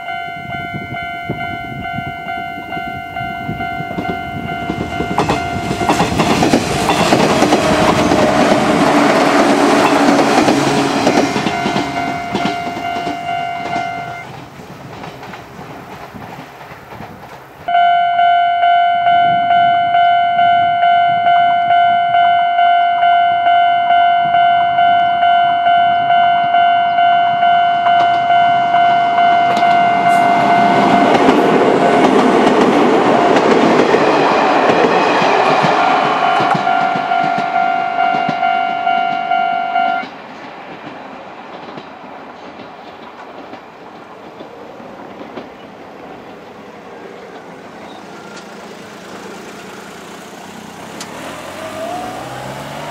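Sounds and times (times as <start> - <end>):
level crossing alarm dinging: 0.0 - 7.6, 8.3 - 14.3, 17.7 - 33.9, 35.8 - 40.1
train passing: 0.0 - 52.9.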